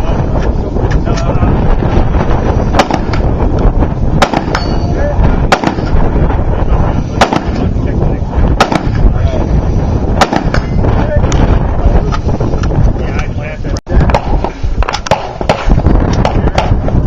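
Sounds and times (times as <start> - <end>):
wind rumble on microphone: 0.0 - 17.0
gunshots: 2.7 - 3.3, 4.2 - 4.8, 5.5 - 6.1, 7.2 - 7.7, 8.6 - 9.1, 10.2 - 10.8, 14.1 - 16.8.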